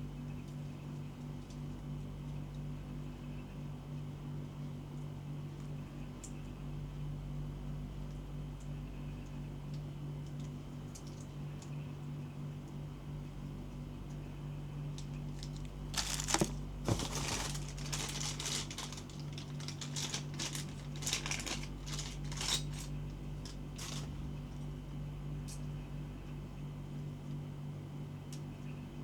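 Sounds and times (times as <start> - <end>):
packaging crinkling: 15.0 - 24.1.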